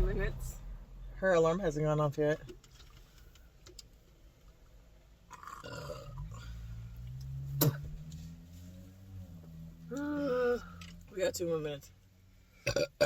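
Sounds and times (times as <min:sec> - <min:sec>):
woman burping: 0:05.4 - 0:06.2, 0:12.6 - 0:13.0.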